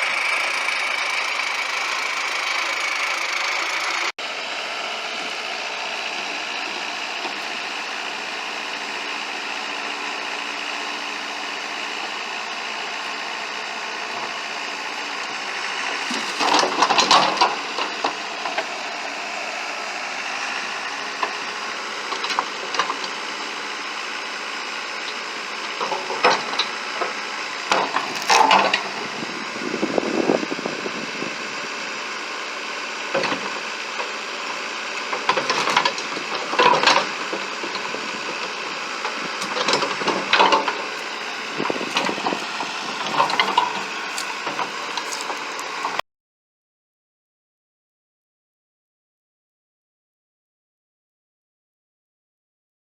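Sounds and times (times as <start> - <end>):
backhoe engine running: 0.0 - 46.0
cracking and clatter: 41.7 - 45.6.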